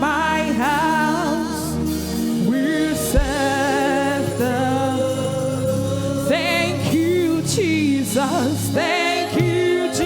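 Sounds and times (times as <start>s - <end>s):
instrumental backing music: 0.0s - 10.0s
person singing with vibrato: 0.0s - 10.0s
low thump: 3.2s - 3.7s.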